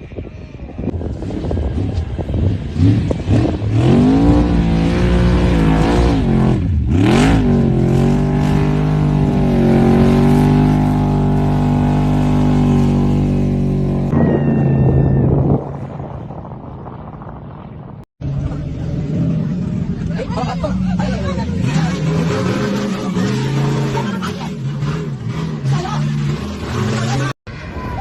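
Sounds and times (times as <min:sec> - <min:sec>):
vehicle engine revving hard: 0:02.8 - 0:14.1, 0:18.9 - 0:27.4.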